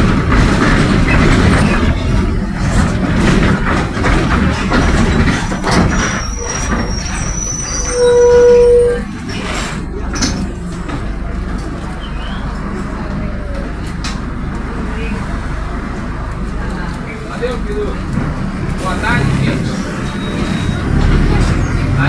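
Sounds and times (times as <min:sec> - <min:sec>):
rattles: 0:00.0 - 0:11.8
bus engine running: 0:00.0 - 0:22.0
road rumble: 0:00.0 - 0:22.0.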